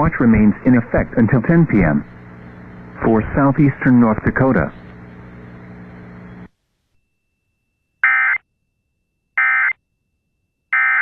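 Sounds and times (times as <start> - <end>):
radio hum and hiss: 0.0 - 7.0.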